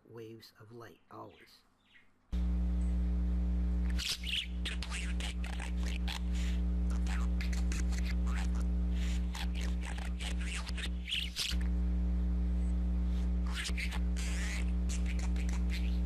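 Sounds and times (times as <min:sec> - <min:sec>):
loud steady low hum: 0:02.4 - 0:16.0
budgerigar chattering: 0:03.9 - 0:11.6, 0:13.4 - 0:16.0.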